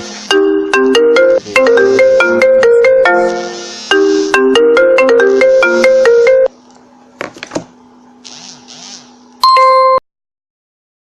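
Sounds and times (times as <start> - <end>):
loud steady beep: 0.3 - 6.5
marimba ringtone: 0.3 - 6.5, 9.4 - 10.0.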